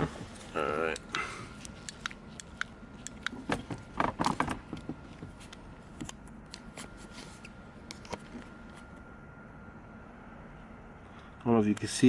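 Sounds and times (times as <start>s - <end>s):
tools clicking and scraping: 0.9s - 8.2s.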